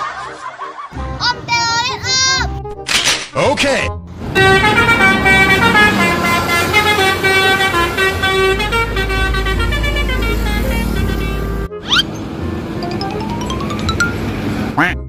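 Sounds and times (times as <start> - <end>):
bus horn playing tune: 4.3 - 11.9.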